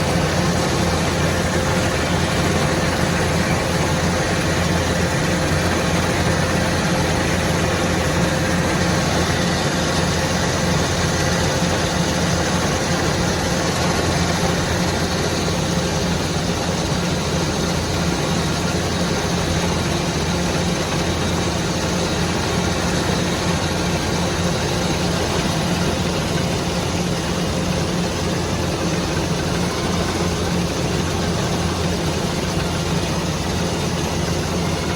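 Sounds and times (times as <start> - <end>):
combine harvester drone: 0.0 - 34.9.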